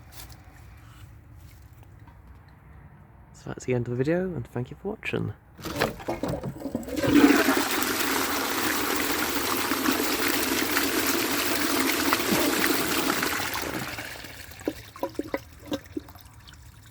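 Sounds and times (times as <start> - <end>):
toilet cistern flushing: 5.6 - 16.9.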